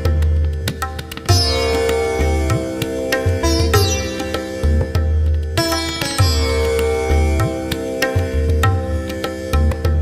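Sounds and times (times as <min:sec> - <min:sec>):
plucked string notes: 0:01.3 - 0:08.3.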